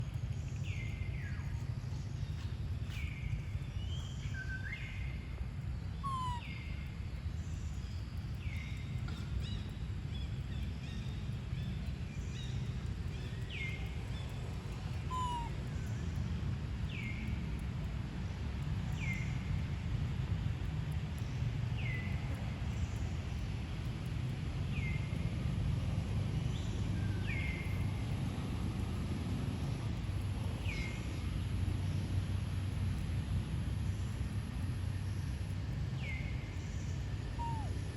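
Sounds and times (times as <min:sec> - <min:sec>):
low outdoor rumble: 0:00.0 - 0:37.9
high descending call: 0:37.4 - 0:37.8.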